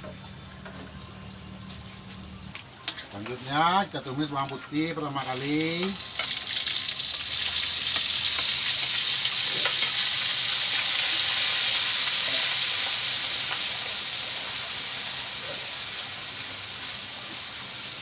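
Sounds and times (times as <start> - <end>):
garlic sizzling in oil: 2.0 - 18.0.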